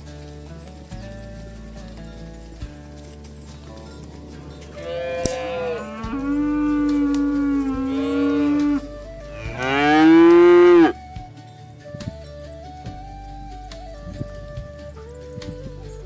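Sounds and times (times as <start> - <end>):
cattle mooing: 4.2 - 11.0.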